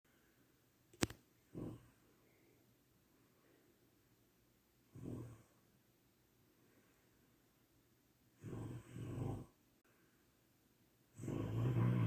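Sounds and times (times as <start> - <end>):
sharp click: 0.9 - 1.2
girl snoring: 5.0 - 5.6, 8.4 - 9.6, 11.2 - 12.0.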